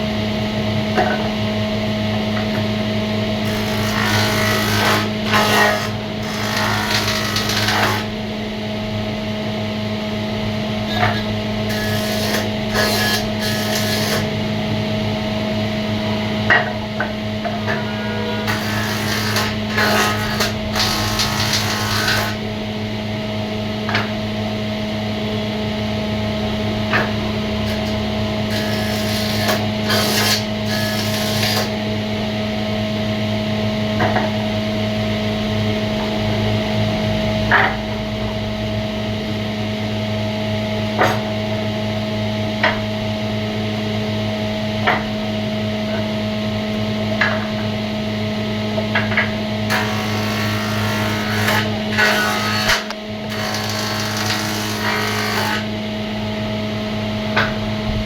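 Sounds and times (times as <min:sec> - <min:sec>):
steady machine hum: 0:00.0 - 0:58.0
rasp scraping wood: 0:03.5 - 0:08.1, 0:11.7 - 0:14.3, 0:17.7 - 0:22.4, 0:28.5 - 0:31.8, 0:49.7 - 0:55.7.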